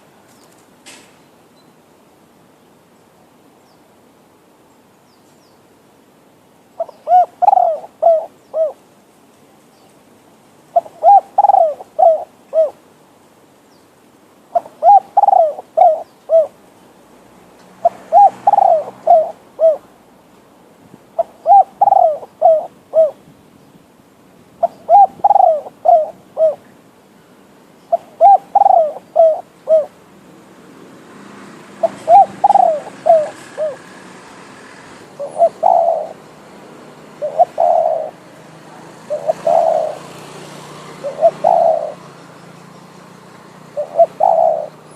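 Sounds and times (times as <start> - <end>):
faint steady hiss: 0.0 - 44.0
dove cooing: 6.8 - 8.8, 10.7 - 12.8, 14.5 - 16.6, 17.8 - 20.0, 21.2 - 23.2, 24.6 - 26.7, 27.9 - 30.0, 31.8 - 34.1, 35.1 - 38.3, 39.0 - 42.2, 43.6 - 44.9.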